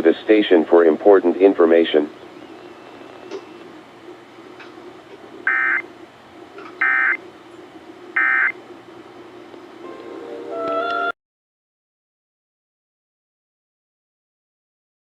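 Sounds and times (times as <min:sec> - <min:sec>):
faint steady hum: 0:00.0 - 0:11.1
warbling digital data tone bursts: 0:05.4 - 0:05.8, 0:06.8 - 0:07.2, 0:08.2 - 0:08.6.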